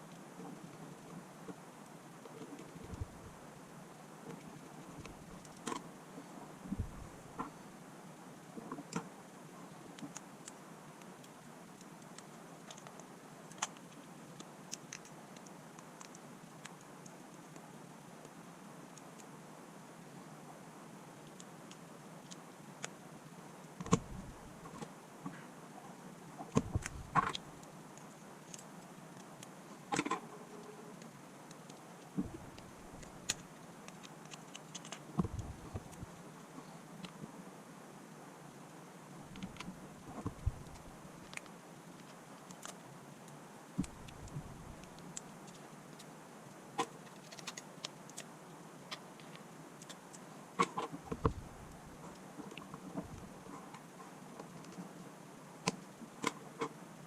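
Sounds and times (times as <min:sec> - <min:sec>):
low steady room hiss: 0:00.0 - 0:57.0
small clicks of tools and parts: 0:46.8 - 0:48.3.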